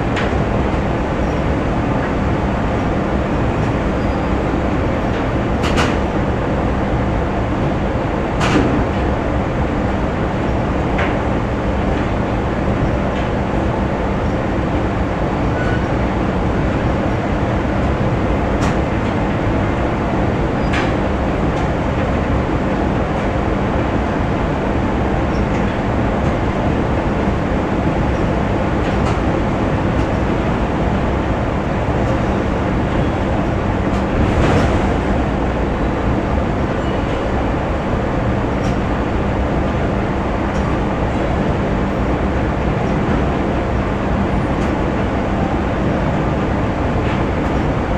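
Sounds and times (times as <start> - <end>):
constant low hum: 0.0 - 47.9
factory machinery din: 14.8 - 47.9.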